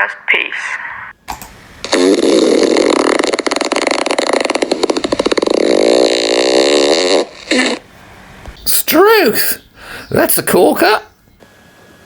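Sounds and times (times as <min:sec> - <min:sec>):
long loud burp: 0:01.9 - 0:07.8.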